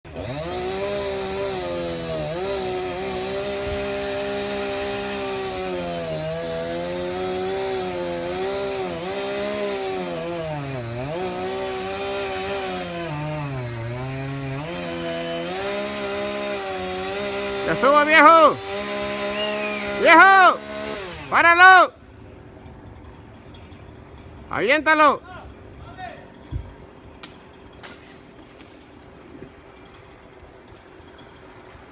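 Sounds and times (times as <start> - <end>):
chainsaw cutting wood: 0.1 - 21.8.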